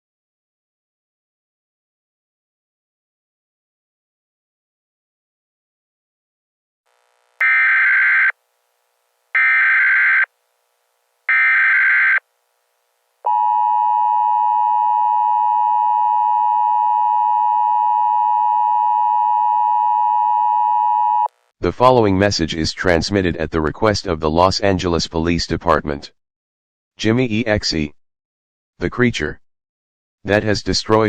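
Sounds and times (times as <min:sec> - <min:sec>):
long steady attention tone: 0:06.9 - 0:21.4
buzzy data bursts: 0:07.0 - 0:08.3.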